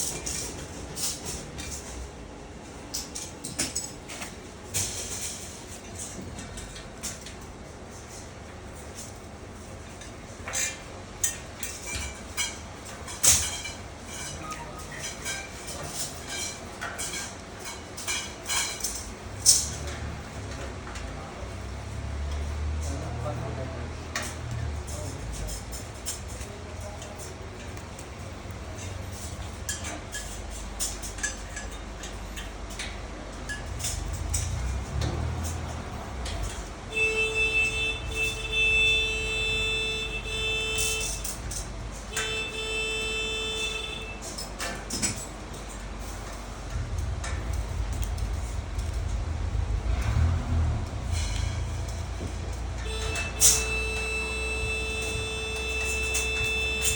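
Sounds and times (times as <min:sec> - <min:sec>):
low rumble: 0:46.0 - 0:52.9.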